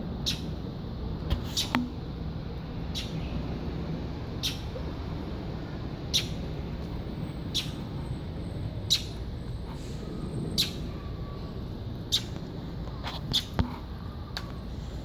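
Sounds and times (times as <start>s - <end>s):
bird giving sharp high calls: 2.9s - 3.3s, 4.4s - 4.8s, 6.1s - 6.4s, 7.5s - 7.9s, 8.9s - 9.2s, 10.6s - 11.1s, 12.1s - 12.4s.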